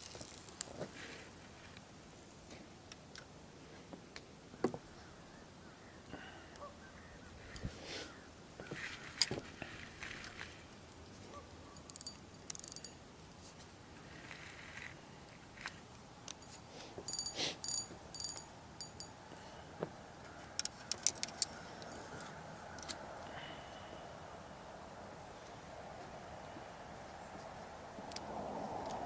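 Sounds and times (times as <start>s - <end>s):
light metallic jingling: 11.7s - 13.0s, 16.3s - 19.3s.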